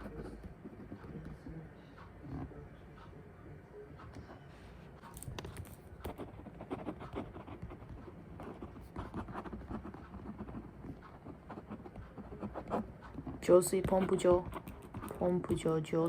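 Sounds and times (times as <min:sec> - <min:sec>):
light taps and clicks at desk: 0:13.1 - 0:16.0.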